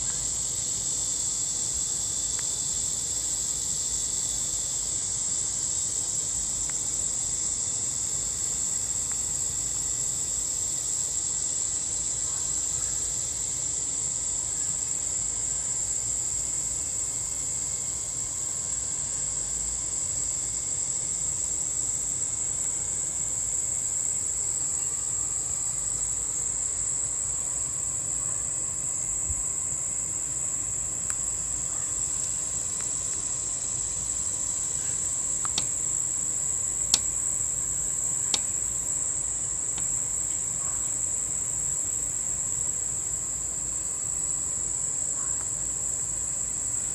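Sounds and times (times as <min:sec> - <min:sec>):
insects chirping: 0:00.0 - 0:46.9
sharp clicks: 0:35.4 - 0:35.7.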